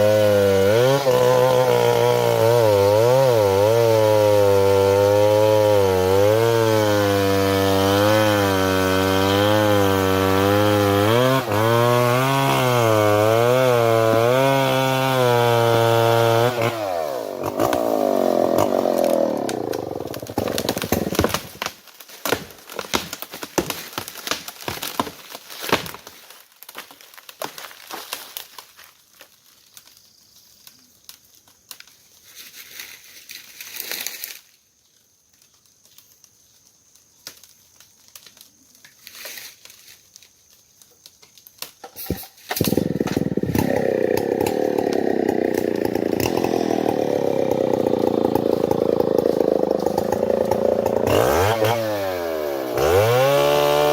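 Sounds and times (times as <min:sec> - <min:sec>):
chainsaw cutting tree trunk: 0:00.0 - 0:25.1, 0:41.8 - 0:53.9
wood cracking and snapping: 0:07.3 - 0:30.0, 0:39.7 - 0:53.9.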